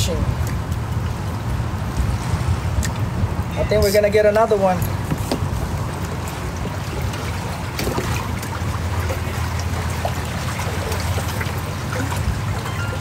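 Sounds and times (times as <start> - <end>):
water lapping against kayak hull: 4.8 - 13.0
small splashes: 5.1 - 13.0.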